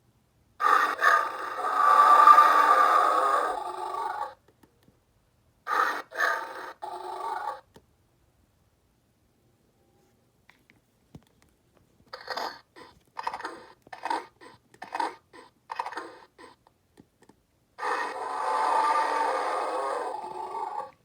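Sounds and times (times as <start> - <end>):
toy dinosaur calls: 0.6 - 4.4, 5.7 - 7.7, 12.2 - 16.6, 17.8 - 21.0.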